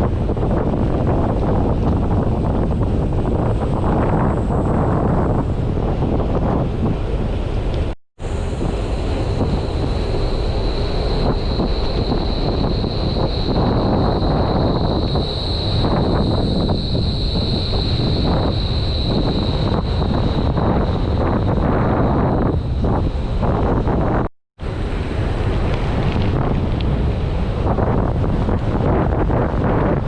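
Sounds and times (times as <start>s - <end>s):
road and vehicle noise: 0.0s - 30.0s
wind buffeting microphone: 0.0s - 30.0s
steady high whine: 6.9s - 29.4s.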